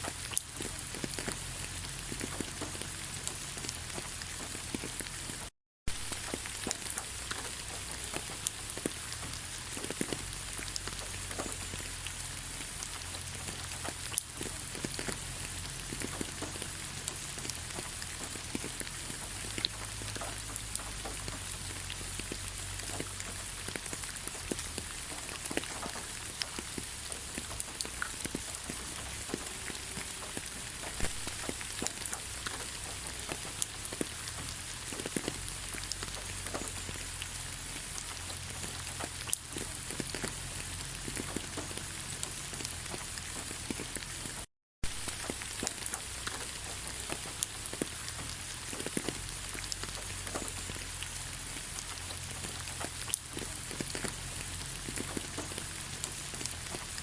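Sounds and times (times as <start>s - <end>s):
raindrops ticking: 0.0s - 57.0s
steady rain hiss: 0.0s - 57.0s.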